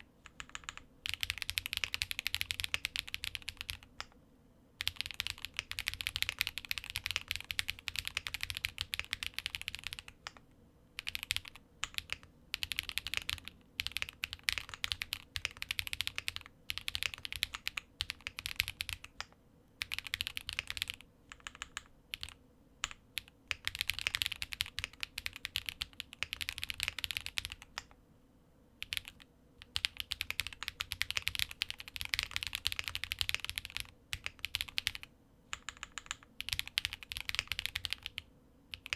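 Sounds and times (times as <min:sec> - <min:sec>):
mechanical keyboard typing: 0:00.3 - 0:04.1, 0:04.8 - 0:10.4, 0:11.0 - 0:27.9, 0:28.8 - 0:38.9.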